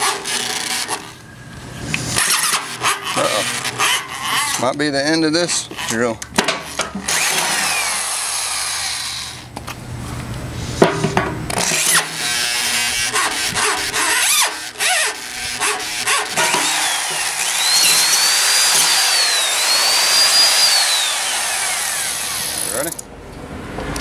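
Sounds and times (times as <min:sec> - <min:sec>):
electric drill motor whining: 0:07.0 - 0:09.5, 0:11.7 - 0:23.0
drill bit chattering in steel: 0:11.7 - 0:23.1.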